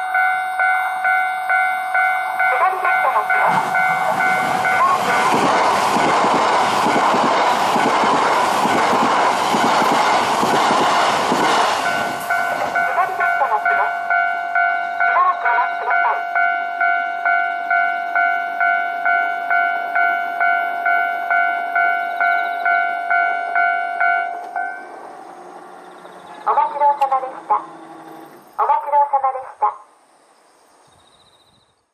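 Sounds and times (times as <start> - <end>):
level crossing warning bell: 0.0 - 5.7, 11.8 - 29.5
train passing with loud rush: 0.0 - 31.5.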